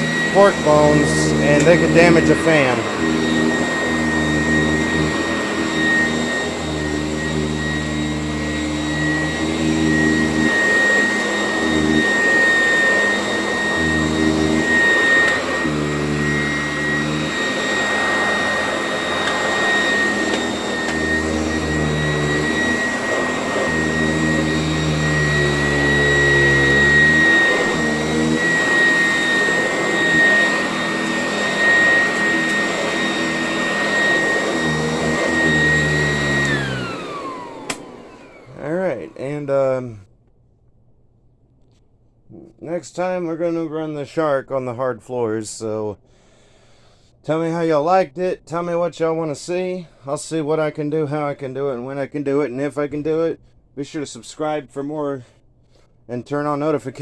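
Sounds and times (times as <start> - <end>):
upright vacuum cleaner whining: 0.0 - 39.5.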